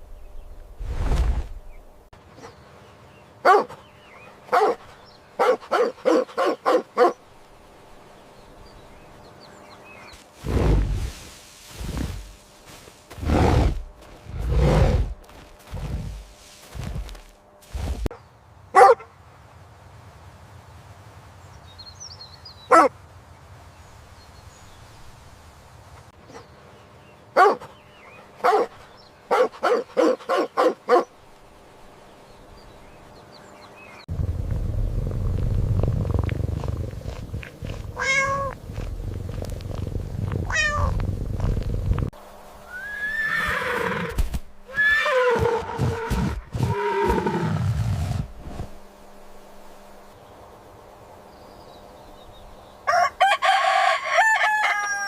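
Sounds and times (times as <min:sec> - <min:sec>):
low rumble: 0:34.1 - 0:42.2
animal calls: 0:35.8 - 0:38.9.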